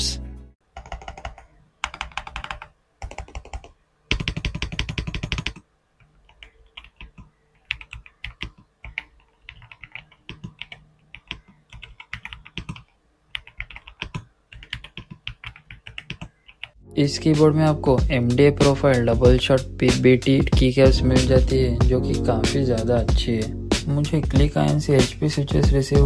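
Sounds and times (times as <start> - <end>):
mechanical keyboard typing: 0.7 - 16.8.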